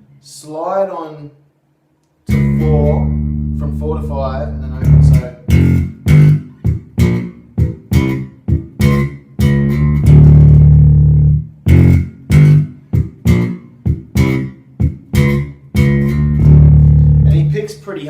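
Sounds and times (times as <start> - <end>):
electric bass staccato notes: 2.3 - 17.7.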